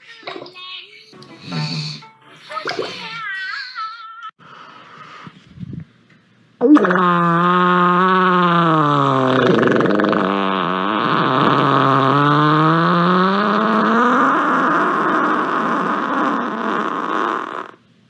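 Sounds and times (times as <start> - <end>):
long loud fart: 6.6 - 17.8.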